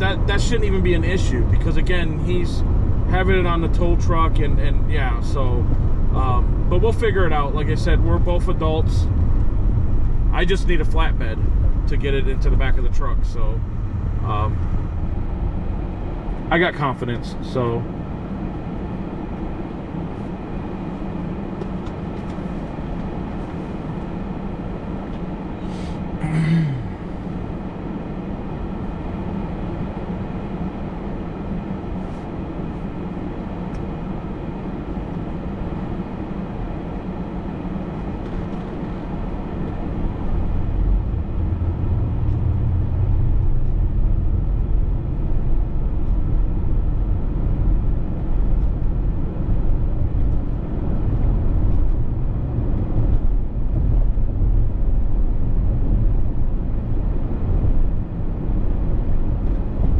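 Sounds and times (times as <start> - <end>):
vehicle engine and road noise: 0.0 - 59.9.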